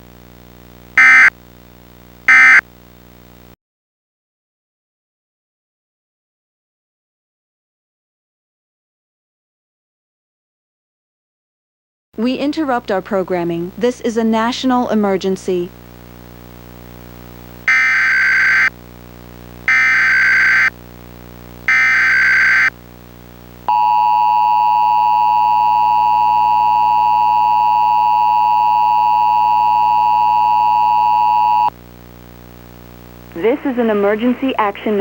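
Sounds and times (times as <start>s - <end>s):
faint steady hum: 0.0s - 3.6s, 12.2s - 35.0s
two-tone attention signal: 1.0s - 1.3s, 2.3s - 2.6s, 21.7s - 22.7s, 23.7s - 31.7s
digital data screech bursts: 2.3s - 2.6s, 17.7s - 18.7s, 19.7s - 20.7s, 21.7s - 22.7s.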